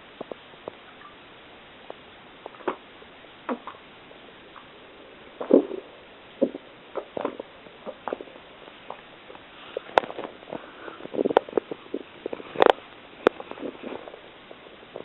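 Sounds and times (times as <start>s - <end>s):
person gulping milk: 3.5s - 3.8s, 4.5s - 14.2s.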